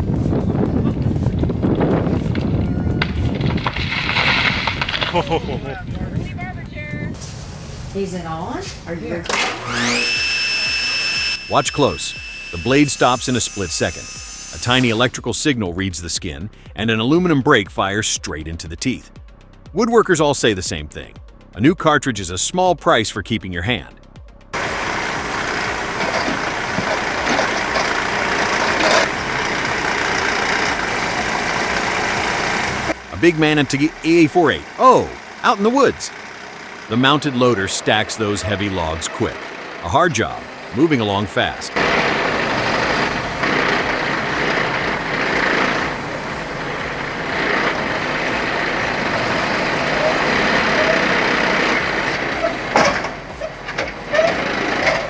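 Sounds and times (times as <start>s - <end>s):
heavy diesel truck engine: 0.0s - 15.0s, 24.5s - 55.0s
hydraulics rushing: 0.0s - 15.4s, 24.6s - 55.0s.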